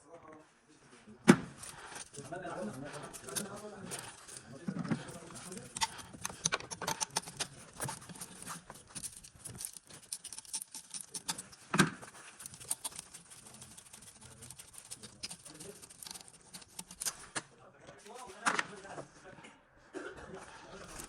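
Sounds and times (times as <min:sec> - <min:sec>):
hand tools clicking and tapping: 0:01.4 - 0:17.4.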